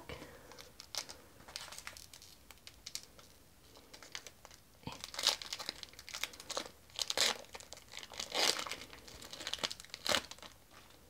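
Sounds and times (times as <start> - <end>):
foil pack tearing and crinkling: 4.0 - 10.6.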